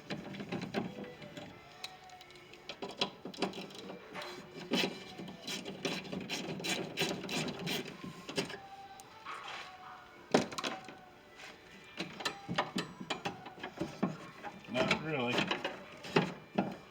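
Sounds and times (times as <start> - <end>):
hand tools clicking and rattling: 0.4 - 8.6, 12.0 - 16.9.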